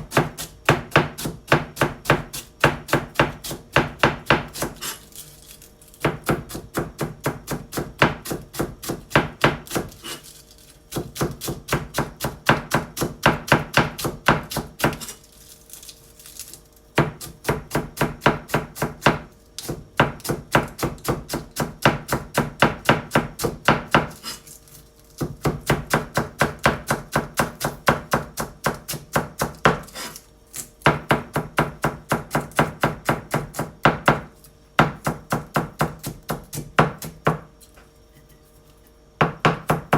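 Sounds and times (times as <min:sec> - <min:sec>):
knife chopping on cutting board: 0:00.0 - 0:05.0, 0:06.0 - 0:10.2, 0:10.9 - 0:15.2, 0:17.0 - 0:24.4, 0:25.2 - 0:37.6, 0:39.2 - 0:39.9.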